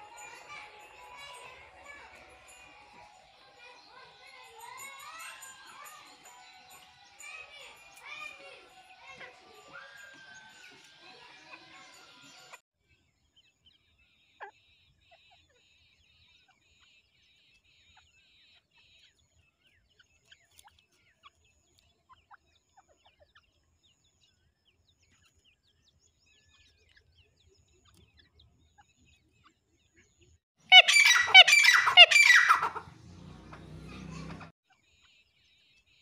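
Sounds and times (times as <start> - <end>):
francolin harsh calls: 30.7 - 33.0.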